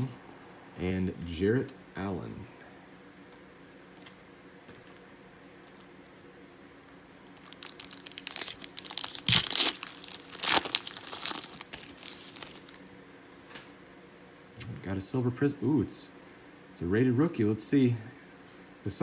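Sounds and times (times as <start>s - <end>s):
foil wrapper crinkling: 7.2s - 12.9s.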